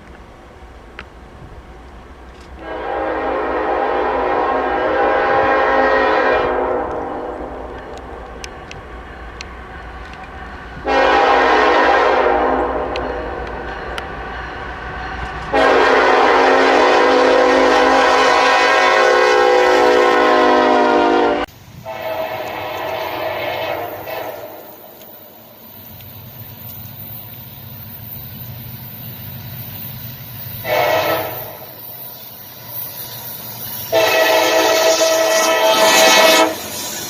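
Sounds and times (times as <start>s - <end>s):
train horn: 2.6s - 8.2s, 10.8s - 25.4s, 30.6s - 31.8s, 33.9s - 36.8s.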